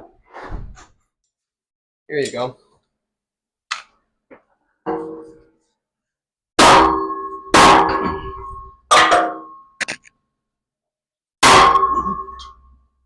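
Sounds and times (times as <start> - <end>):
hammer striking metal rim: 6.6 - 9.5.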